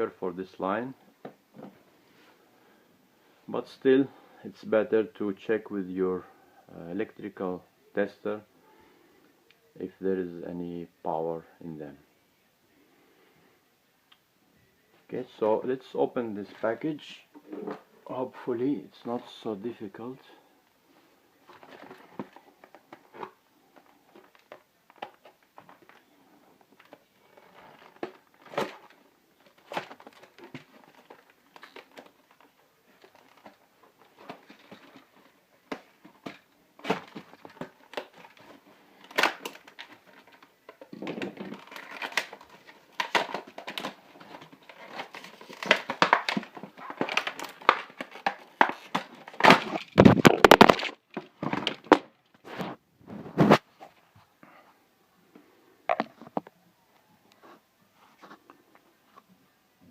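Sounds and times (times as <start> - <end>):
plastic packaging crinkling: 21.4 - 52.8.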